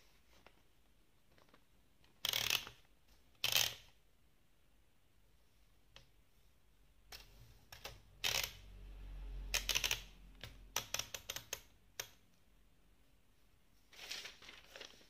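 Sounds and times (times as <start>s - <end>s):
typewriter clacking: 9.6s - 12.1s.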